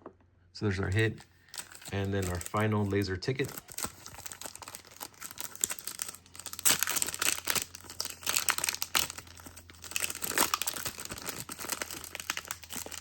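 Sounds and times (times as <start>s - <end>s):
plastic and foil packaging crinkling: 1.2s - 13.0s.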